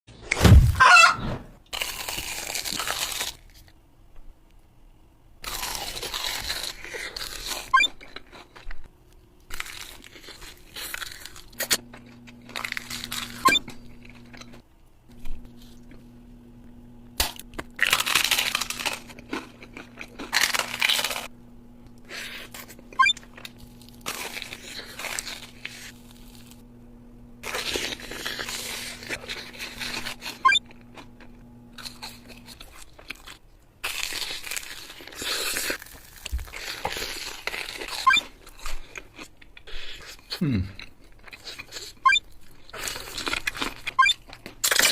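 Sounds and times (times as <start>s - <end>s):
bread crunching: 1.7s - 3.8s, 5.4s - 26.6s, 27.4s - 44.9s
steady low hum: 11.5s - 33.0s.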